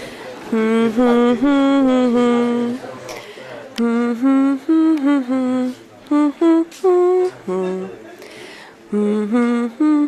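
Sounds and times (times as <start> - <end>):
person humming: 0.5 - 2.8, 3.8 - 7.9, 8.9 - 10.0.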